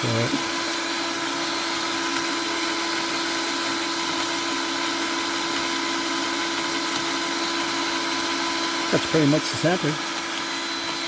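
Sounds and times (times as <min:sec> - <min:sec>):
electric drill motor humming: 0:00.0 - 0:11.0.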